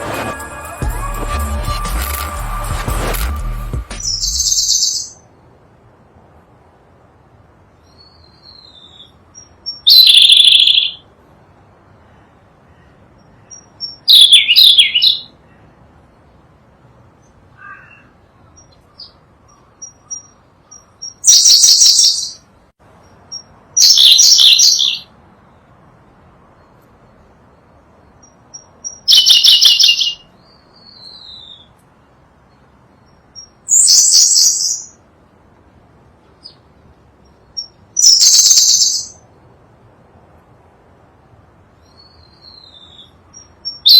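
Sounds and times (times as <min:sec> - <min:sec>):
intro music: 0:00.0 - 0:04.4
robin singing high phrases: 0:04.0 - 0:05.2, 0:28.6 - 0:31.7, 0:37.5 - 0:39.2.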